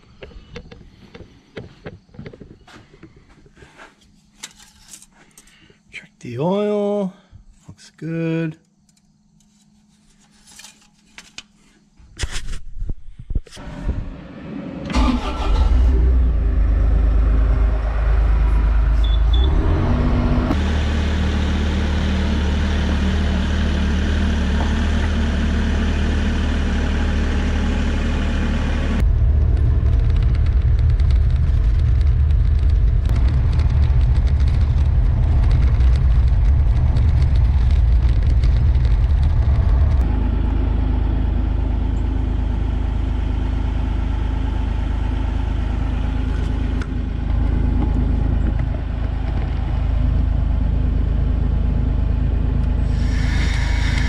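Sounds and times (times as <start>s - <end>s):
excavator diesel engine running: 13.6s - 54.0s.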